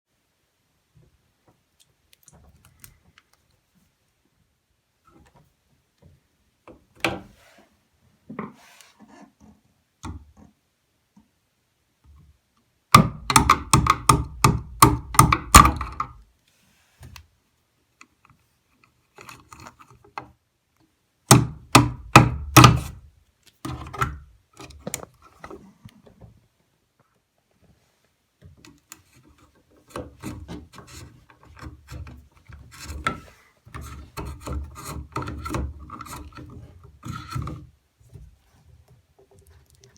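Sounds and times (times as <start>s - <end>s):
tools knocking on wood: 13.0s - 16.2s, 21.3s - 22.9s.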